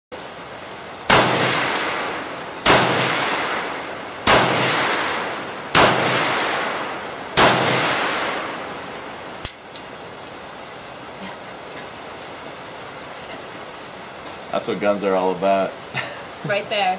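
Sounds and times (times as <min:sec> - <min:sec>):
revolver shots echoing: 0:01.1 - 0:09.6.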